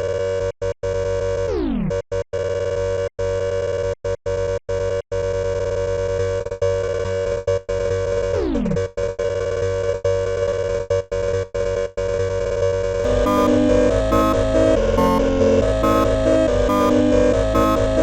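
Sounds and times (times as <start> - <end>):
electronic alarm tones: 13.0 - 18.0
falling pitch sweep: 13.0 - 18.0.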